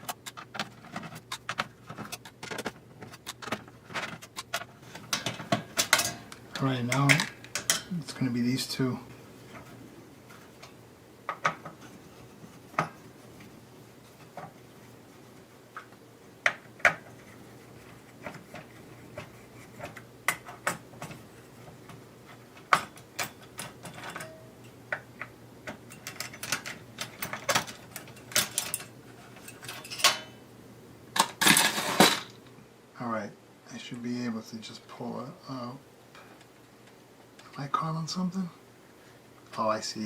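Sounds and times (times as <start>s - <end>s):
hand tools clicking and tapping: 0.0s - 8.0s, 9.5s - 14.8s, 15.7s - 30.4s.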